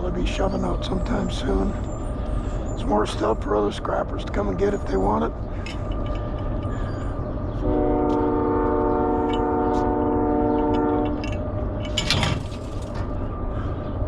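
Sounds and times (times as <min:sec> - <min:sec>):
train horn chord: 0:07.6 - 0:11.4.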